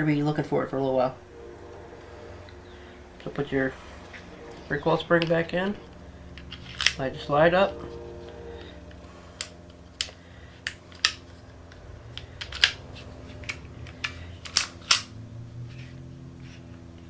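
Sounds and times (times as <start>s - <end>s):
low steady hum: 0.0s - 17.0s
metallic pistol parts clicking: 6.4s - 7.0s, 8.6s - 16.6s.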